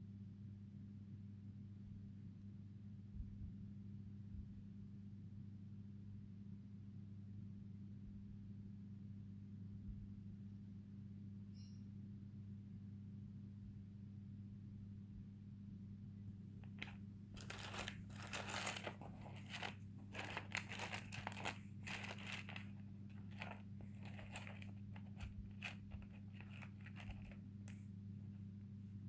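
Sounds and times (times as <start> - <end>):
crinkling and rustling: 16.6 - 27.8.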